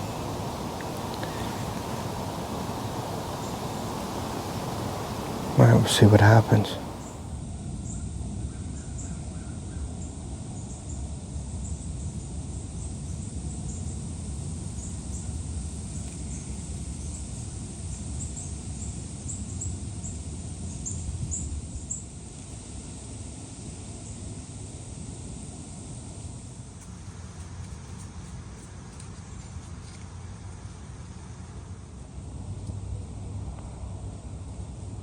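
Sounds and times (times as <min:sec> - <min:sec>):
wind buffeting microphone: 0:00.0 - 0:07.3.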